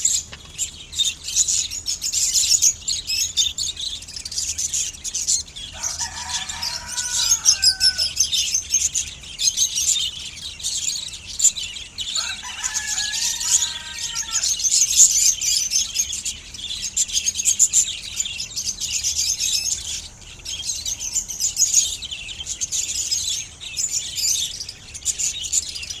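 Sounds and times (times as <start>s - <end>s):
budgies chirping: 0.0s - 26.0s
lower drawn-out bird call: 5.7s - 8.6s, 12.1s - 15.5s.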